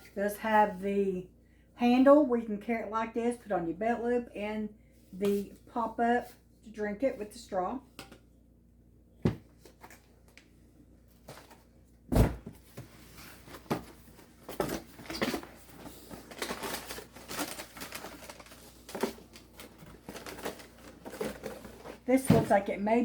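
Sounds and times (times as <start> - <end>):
plastic packaging crinkling: 14.1 - 22.1.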